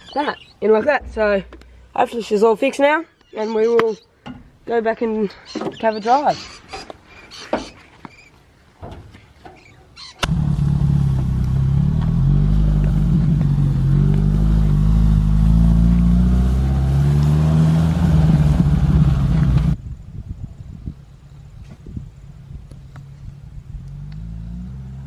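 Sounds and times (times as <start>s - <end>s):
car engine running under load: 10.2s - 19.8s.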